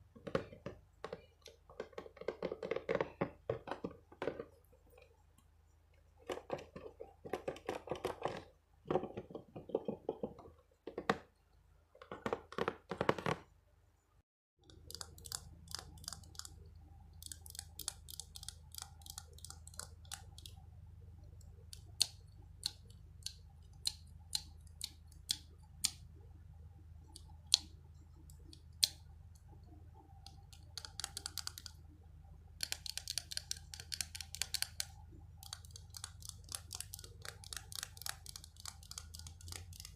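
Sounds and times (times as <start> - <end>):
sharp clicks and taps: 27.1 - 31.9, 32.6 - 39.9.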